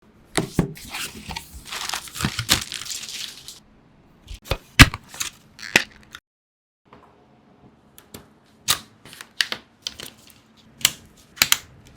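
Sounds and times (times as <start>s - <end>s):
packaging rustling: 0.8s - 3.6s.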